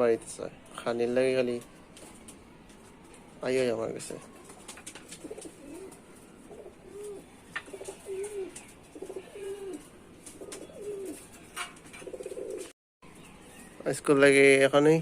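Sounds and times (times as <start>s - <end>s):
pigeons cooing: 4.3s - 12.7s.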